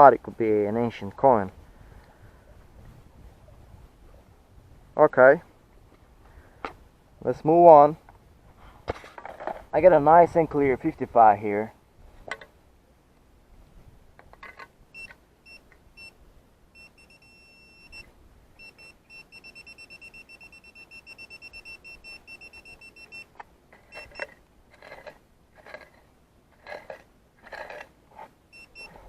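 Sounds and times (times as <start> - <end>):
metal detector beeping: 15.0 - 16.2, 16.8 - 24.4, 28.5 - 29.0.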